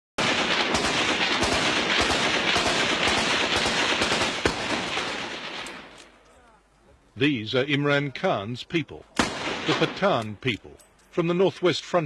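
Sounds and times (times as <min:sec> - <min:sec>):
dense overlapping gunfire: 0:00.2 - 0:06.0, 0:09.2 - 0:10.2.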